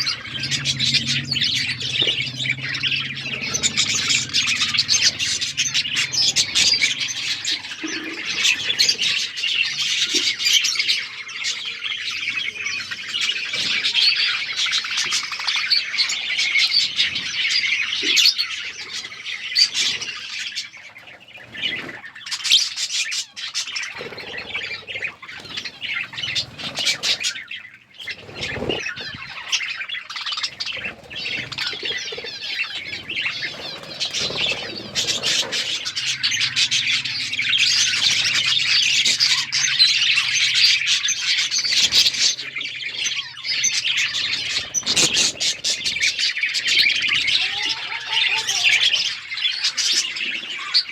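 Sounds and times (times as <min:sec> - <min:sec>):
budgerigars chattering: 0:00.0 - 0:50.9.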